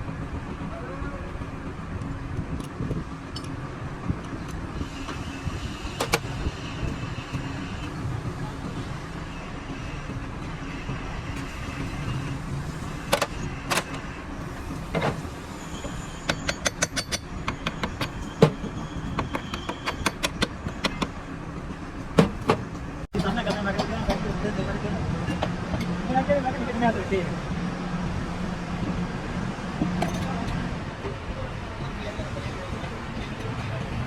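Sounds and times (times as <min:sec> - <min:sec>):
sharp clicks and knocks: 0:06.0 - 0:06.3, 0:16.3 - 0:21.2.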